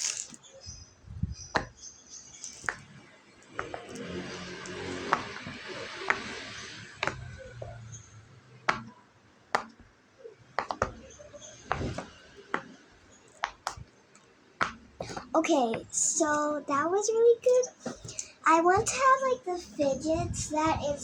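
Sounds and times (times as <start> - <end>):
rustling of toy handled: 0.0 - 0.4, 2.4 - 2.7.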